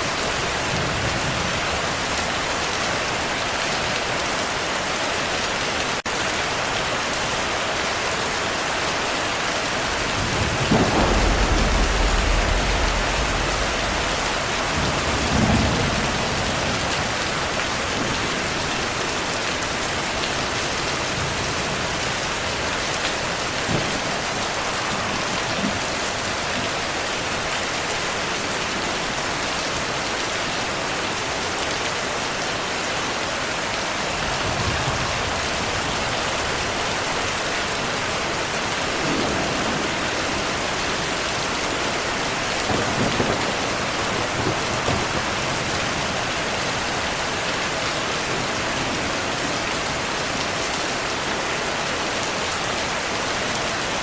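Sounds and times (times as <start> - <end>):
heavy rain: 0.0 - 54.0
thunder rumbling: 9.4 - 27.5, 34.2 - 38.0, 38.7 - 47.2
distant thunder cracks: 9.7 - 18.6.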